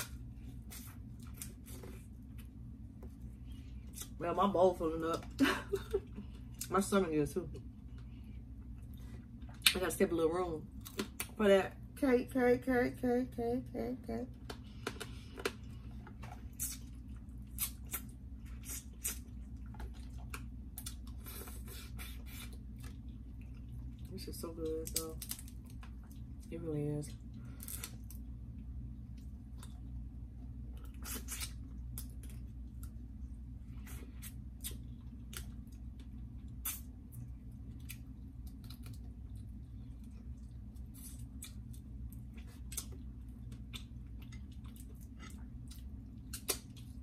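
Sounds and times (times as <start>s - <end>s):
steady low hum: 0.0s - 47.0s
person chewing wetly: 14.6s - 24.1s, 27.8s - 47.0s
wet smacking and squishing: 41.2s - 47.0s.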